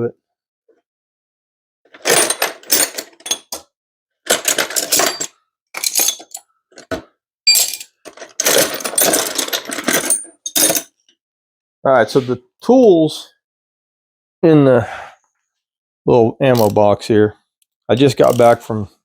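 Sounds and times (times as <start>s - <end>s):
metal tools clattering: 1.9s - 3.6s, 4.3s - 11.0s.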